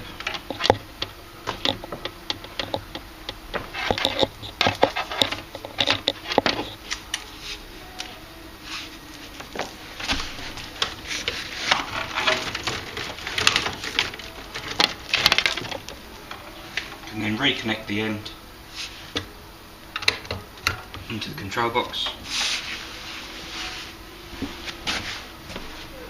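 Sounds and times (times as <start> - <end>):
cables clicking: 0.0 - 7.3, 9.4 - 17.2.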